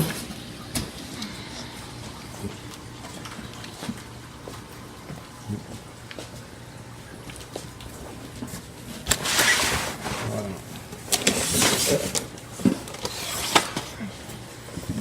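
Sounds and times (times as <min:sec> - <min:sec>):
paper and cardboard rustling: 0:09.1 - 0:14.0.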